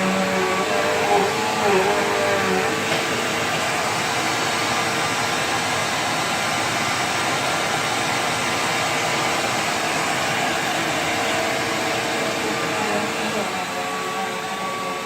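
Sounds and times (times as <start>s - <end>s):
upright vacuum cleaner running: 0.0s - 15.0s.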